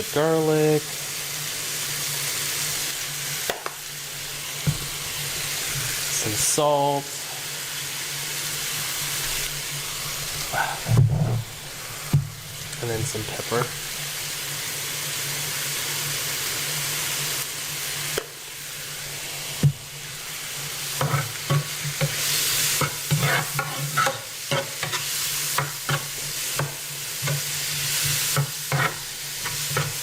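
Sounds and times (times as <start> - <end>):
leeks sizzling in hot oil: 0.0 - 30.0
utensil scraping a pan: 20.9 - 30.0.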